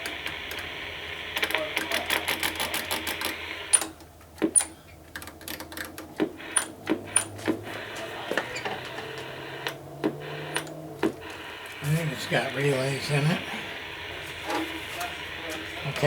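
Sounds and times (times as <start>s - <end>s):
relays clicking: 1.4s - 11.4s.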